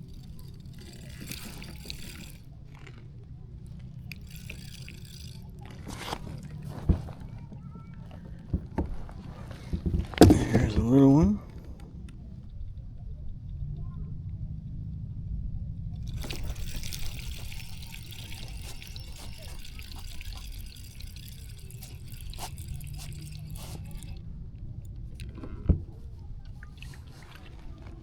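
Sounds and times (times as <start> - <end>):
water splashing and dripping: 0.0 - 2.5, 3.9 - 7.2, 16.0 - 24.2.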